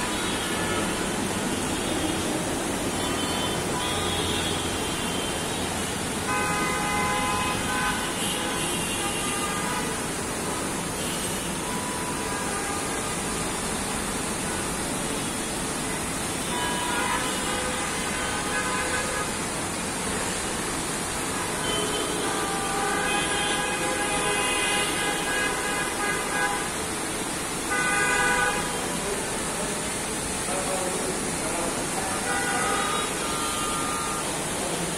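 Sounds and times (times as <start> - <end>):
vehicle horns honking: 0.0 - 2.2, 2.9 - 10.0, 16.4 - 19.4, 21.4 - 26.8, 27.7 - 29.1, 31.9 - 34.8
rain: 0.0 - 34.9
traffic hiss: 0.0 - 34.9.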